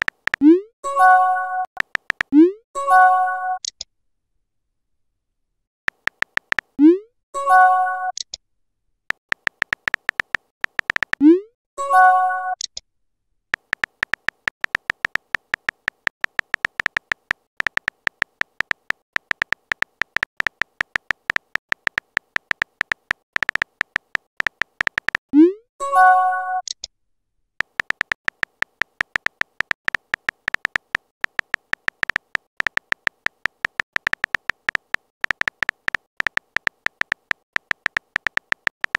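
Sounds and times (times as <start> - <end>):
keyboard tap clicks: 0.0 - 0.5, 1.8 - 2.4, 5.9 - 6.7, 9.1 - 11.2, 13.6 - 25.2, 27.6 - 38.9.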